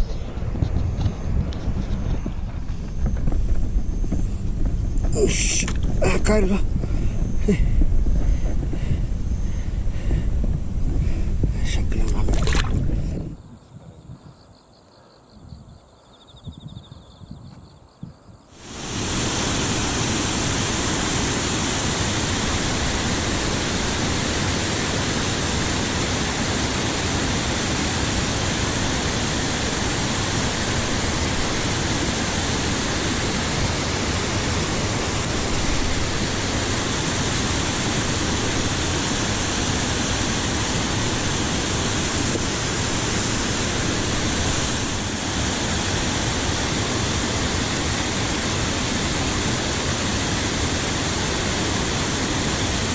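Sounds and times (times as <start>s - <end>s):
waterfall rushing: 18.6s - 52.9s.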